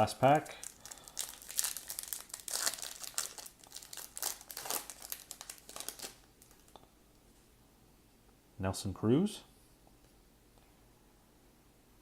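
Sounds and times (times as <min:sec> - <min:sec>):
wrapper crinkling: 0:00.0 - 0:06.8.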